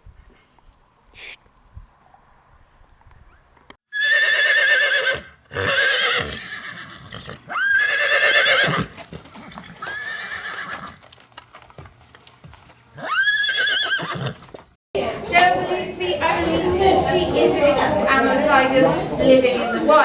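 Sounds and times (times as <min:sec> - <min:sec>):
horse neighing: 0:03.9 - 0:11.0, 0:13.0 - 0:14.4.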